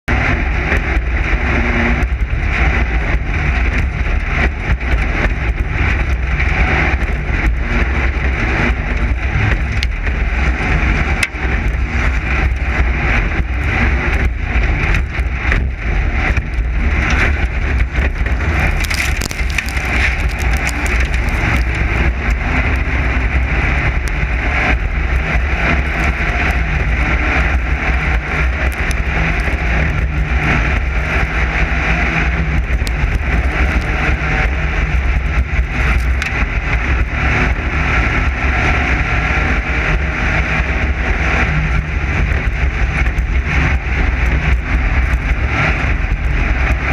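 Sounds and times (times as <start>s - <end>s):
race car engine drone: 0.0s - 46.9s
chassis rattles and knocks: 14.0s - 22.8s.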